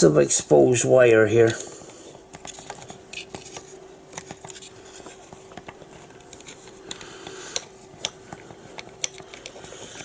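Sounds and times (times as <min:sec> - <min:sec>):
faint steady hum: 0:00.0 - 0:10.0
clicks of wires and plastic parts: 0:02.3 - 0:10.0.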